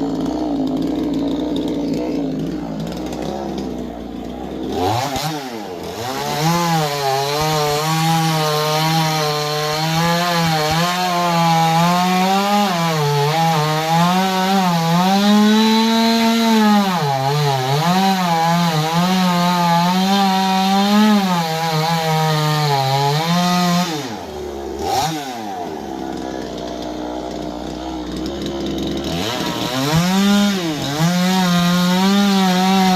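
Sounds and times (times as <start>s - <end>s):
chainsaw cutting wood: 0.0s - 32.9s.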